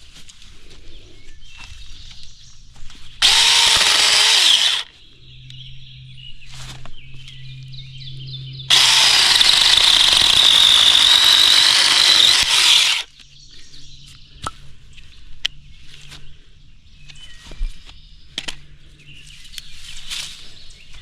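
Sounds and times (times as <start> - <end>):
battery chainsaw sawing wood: 3.2 - 4.9, 8.7 - 13.1.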